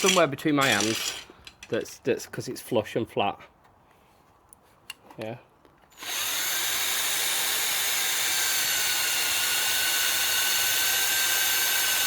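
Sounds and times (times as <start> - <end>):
power drill drilling into wood: 5.9 - 12.0.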